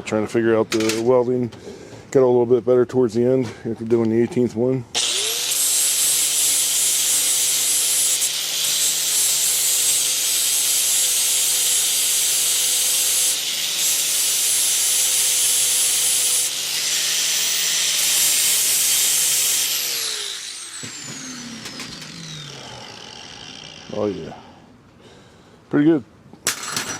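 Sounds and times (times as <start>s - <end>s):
grinder disc spinning down: 5.0s - 11.8s, 15.4s - 24.3s
angle grinder grinding metal: 5.0s - 24.6s.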